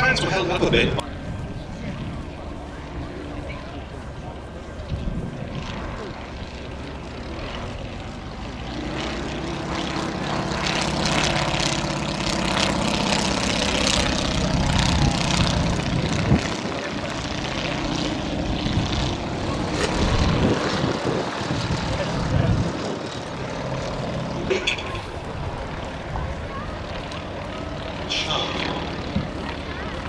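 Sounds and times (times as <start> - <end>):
propeller plane flying past: 0.0 - 30.0.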